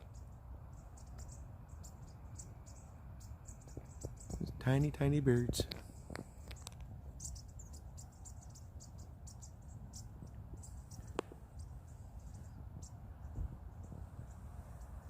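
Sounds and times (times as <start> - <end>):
songbirds peeping: 0.0 - 15.0.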